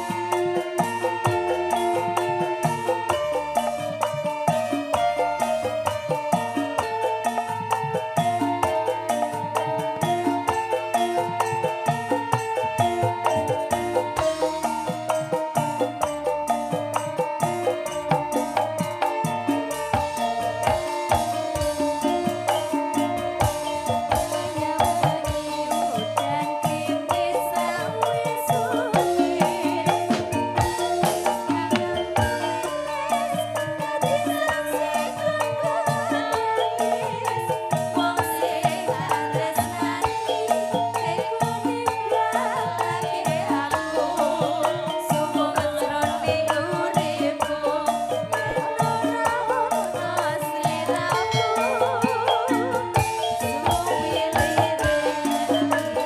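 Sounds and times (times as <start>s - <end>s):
live band music: 0.0s - 56.0s
percussion strikes: 0.0s - 56.0s
shaker-like rattle: 0.0s - 56.0s
struck mallet-like melody: 0.0s - 56.0s.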